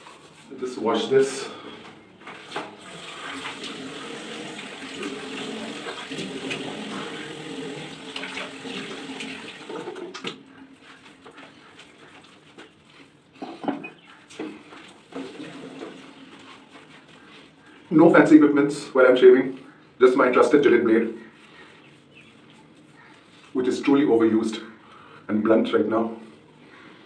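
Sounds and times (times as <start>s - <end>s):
tap water running into sink: 2.6s - 10.4s, 15.1s - 16.2s
water splashing: 2.8s - 10.3s.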